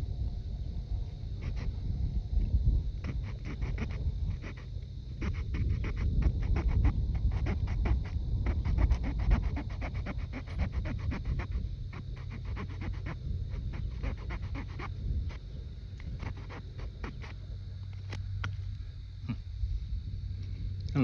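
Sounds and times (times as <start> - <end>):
saw cutting wet wood: 5.2 - 11.6, 12.2 - 14.9, 16.2 - 17.3.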